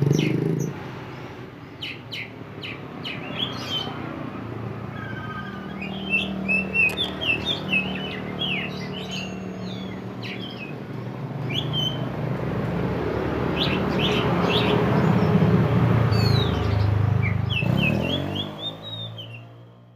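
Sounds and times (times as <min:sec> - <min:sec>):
bird singing whistles and chirps: 0:04.9 - 0:10.7, 0:11.5 - 0:12.1, 0:16.1 - 0:19.6.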